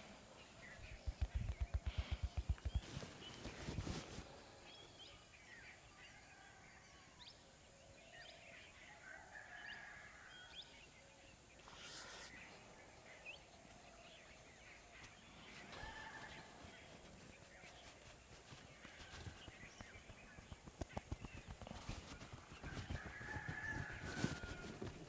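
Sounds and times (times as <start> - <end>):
short rustle: 2.8 - 4.3.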